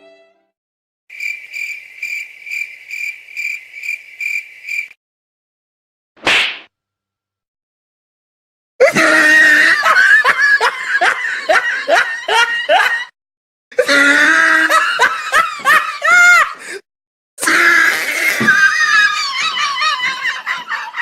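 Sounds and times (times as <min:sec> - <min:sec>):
person laughing: 0:08.8 - 0:13.1, 0:13.8 - 0:16.8, 0:18.3 - 0:21.0.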